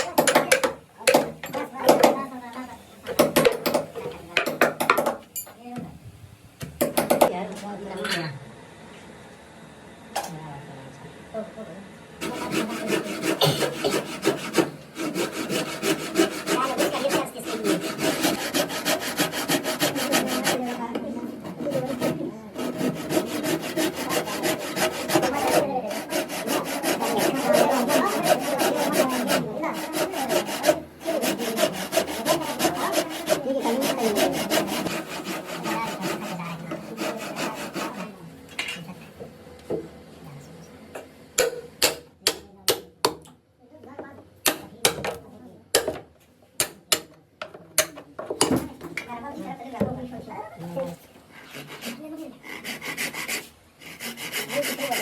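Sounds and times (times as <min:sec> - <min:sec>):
hand tool scraping wood: 0:12.2 - 0:38.2, 0:51.3 - 0:55.0.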